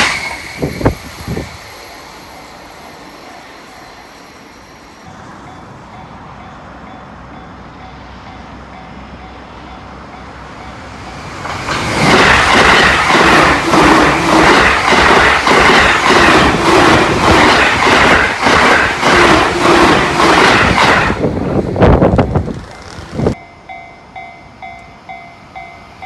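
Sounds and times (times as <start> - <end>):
train wheels clickety-clack: 0.0 - 2.7, 11.1 - 23.4
train passing at high speed: 0.0 - 26.0.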